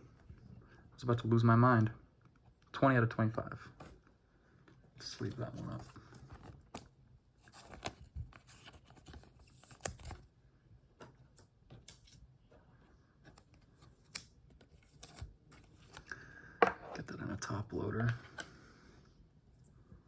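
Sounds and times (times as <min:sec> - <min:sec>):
trading cards rustling and sliding: 0:05.1 - 0:10.2, 0:13.2 - 0:16.2.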